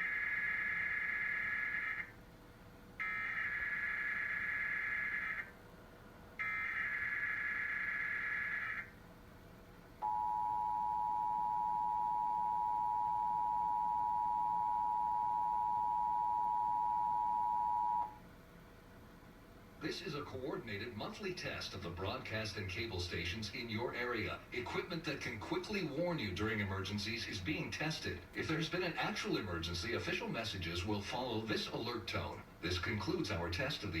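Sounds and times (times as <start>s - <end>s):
two-tone attention signal: 10.0s - 18.2s.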